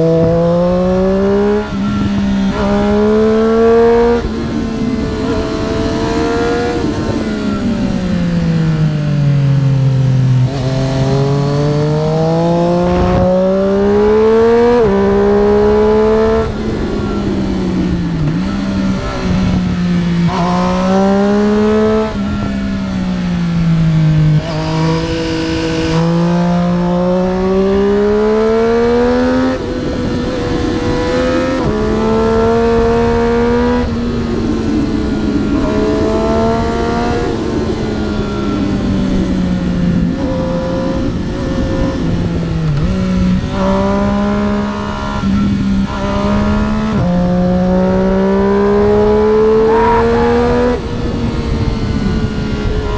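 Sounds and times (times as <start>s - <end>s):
motorcycle engine accelerating: 0.0s - 52.9s
wind rush: 0.0s - 52.9s.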